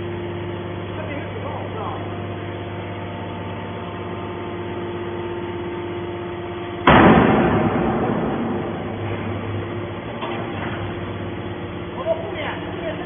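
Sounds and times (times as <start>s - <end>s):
hydraulic power unit humming: 0.0s - 13.0s
loud crash: 6.8s - 9.8s.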